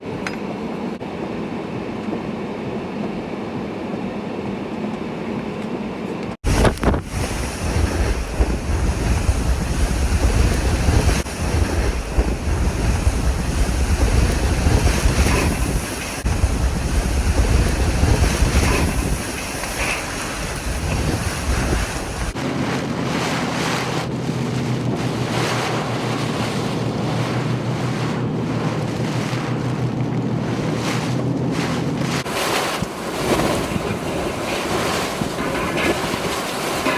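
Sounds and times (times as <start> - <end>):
wind gusting against microphone: 0.0 - 23.0, 24.1 - 36.9.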